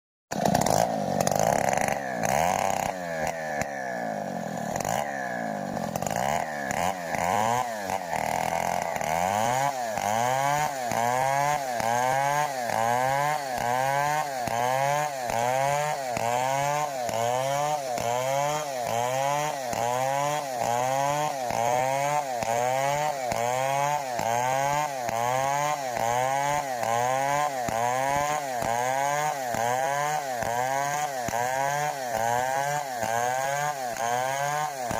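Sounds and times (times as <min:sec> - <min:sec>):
chainsaw engine running at high revs: 0:00.3 - 0:34.9.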